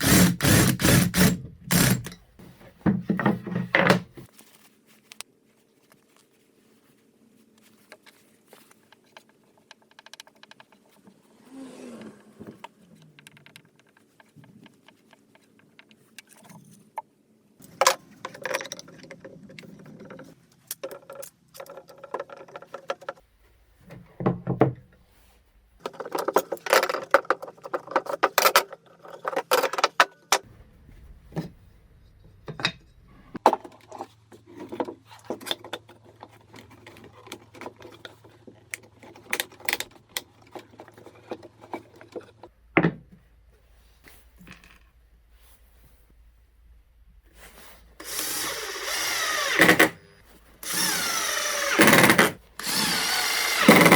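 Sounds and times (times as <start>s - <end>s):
wooden parts and tools clattering: 0.0s - 4.3s, 17.7s - 23.2s, 25.8s - 30.4s, 32.3s - 43.0s, 50.7s - 53.9s.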